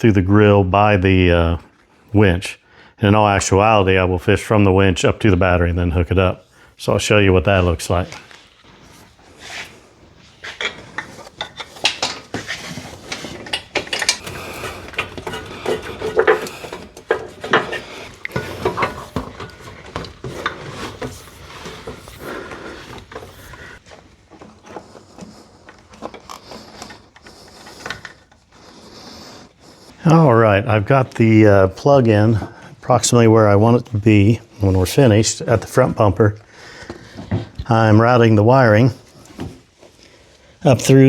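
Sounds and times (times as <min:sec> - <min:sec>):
cables rubbing and scraping: 0:07.2 - 0:31.5
clicks and knocks: 0:10.4 - 0:28.4.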